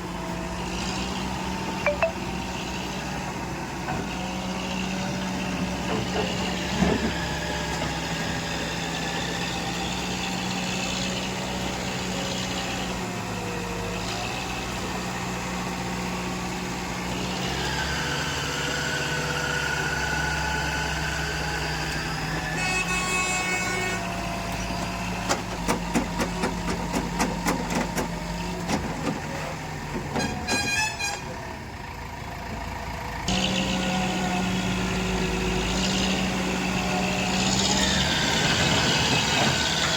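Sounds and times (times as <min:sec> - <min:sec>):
diesel engine running: 0:31.3 - 0:39.9.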